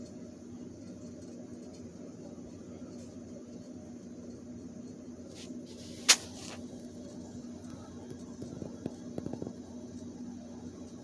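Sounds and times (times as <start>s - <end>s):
sharp click: 6.0s - 6.6s.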